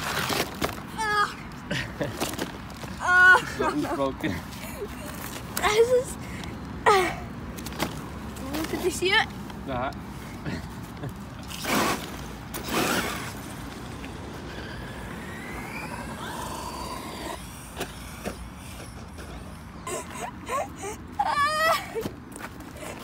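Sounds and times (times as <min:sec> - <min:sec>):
rc car noisy rushes: 0:11.5 - 0:20.0
electric motor whine rising: 0:14.3 - 0:19.4.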